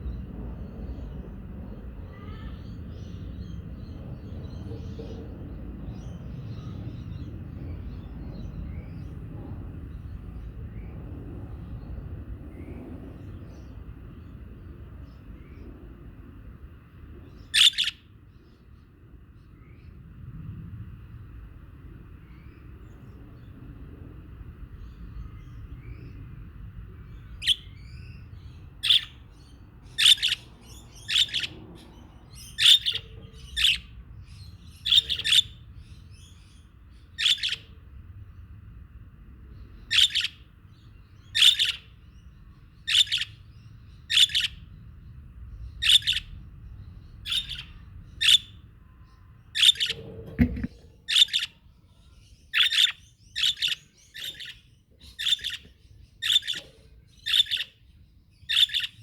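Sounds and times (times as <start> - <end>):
low steady rumble: 0.0 - 58.8
budgerigars chirping: 17.6 - 18.0, 30.0 - 31.5, 32.5 - 33.9, 37.2 - 37.6, 39.9 - 40.4, 41.3 - 41.9, 42.9 - 43.4, 44.1 - 44.6, 47.3 - 48.5, 49.6 - 51.6, 52.6 - 57.8, 58.5 - 59.0
low thump: 50.0 - 51.0.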